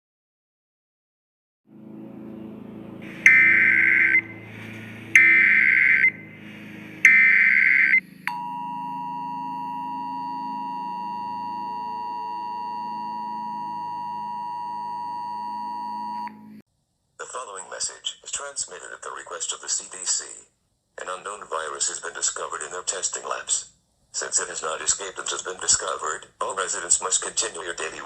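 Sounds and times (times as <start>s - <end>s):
faint low drone: 1.7s - 16.6s
two-tone attention signal: 3.0s - 4.5s, 5.2s - 6.4s, 7.0s - 16.6s
digital header data bursts: 3.1s - 4.2s, 5.2s - 6.2s, 7.0s - 8.0s.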